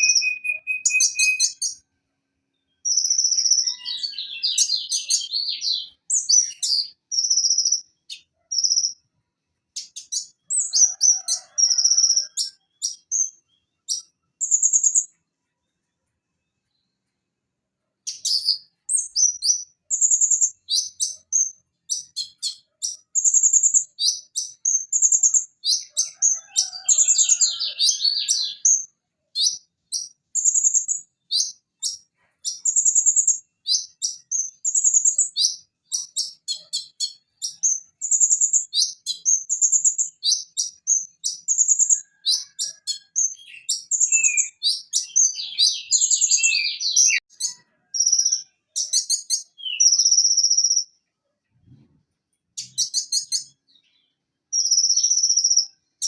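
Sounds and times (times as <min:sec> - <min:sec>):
bird singing high chirps and trills: 0:00.0 - 0:17.2, 0:18.0 - 0:56.0.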